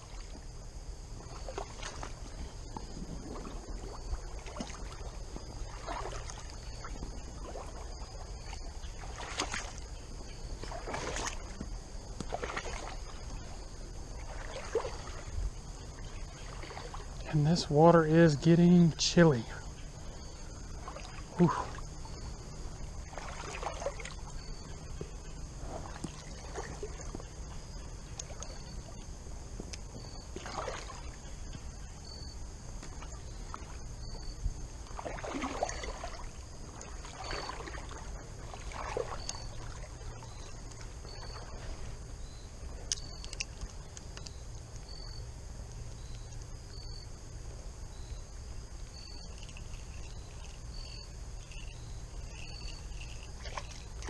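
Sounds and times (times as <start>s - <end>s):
water sloshing around legs: 0.0s - 17.7s, 19.6s - 47.0s, 47.9s - 54.0s
steady low rumble: 0.0s - 54.0s
faint high chirp: 23.4s - 29.0s, 29.8s - 32.4s, 33.0s - 34.4s, 36.8s - 38.0s, 38.8s - 45.3s, 45.9s - 47.1s, 47.9s - 48.3s, 48.9s - 54.0s.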